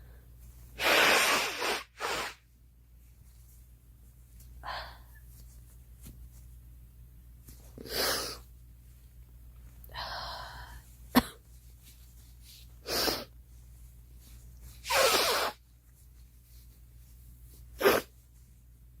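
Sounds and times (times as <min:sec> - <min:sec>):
girl sneezing: 0:17.8 - 0:18.1.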